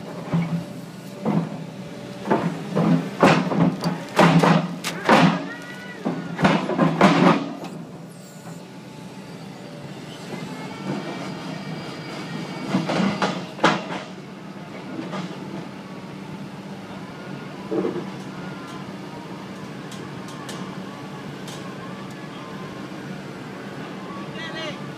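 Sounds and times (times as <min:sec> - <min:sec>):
piling rig drone: 0:00.2 - 0:14.0.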